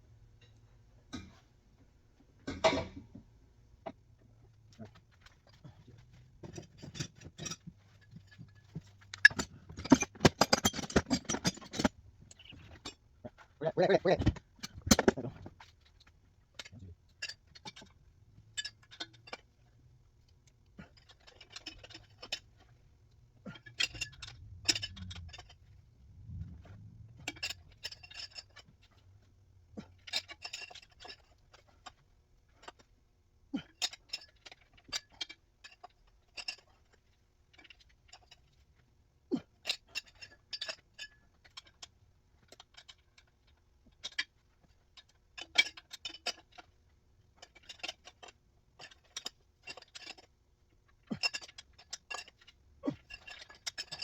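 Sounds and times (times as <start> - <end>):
low steady hum: 0.0 - 32.9
metallic clicks and clinks: 6.4 - 13.0, 23.5 - 25.7.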